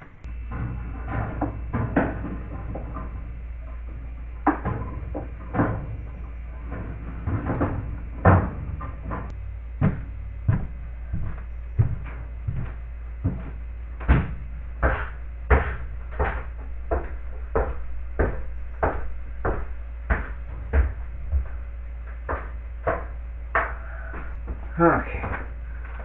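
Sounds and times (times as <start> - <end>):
steady low hum: 0.0 - 26.0
objects knocking and bumping: 0.2 - 26.0.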